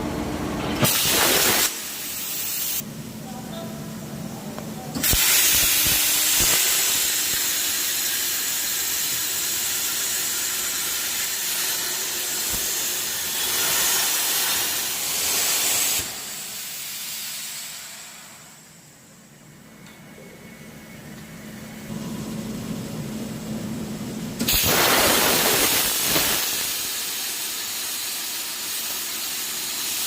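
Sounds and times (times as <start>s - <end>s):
cutting torch hissing: 0.8s - 2.8s, 5.0s - 18.6s, 24.4s - 30.0s.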